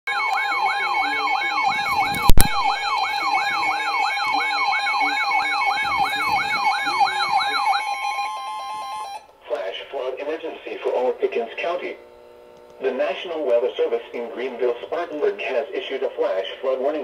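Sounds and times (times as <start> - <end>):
electronic siren sweeping down: 0.1 - 9.3
two-tone alarm: 0.1 - 9.3.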